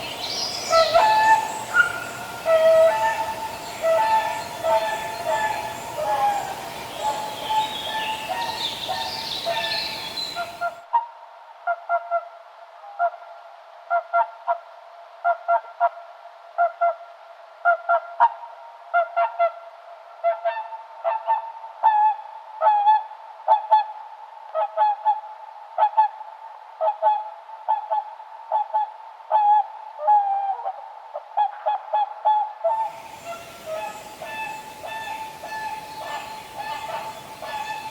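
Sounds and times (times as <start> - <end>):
swan honking: 0.0 - 10.8, 32.8 - 37.9.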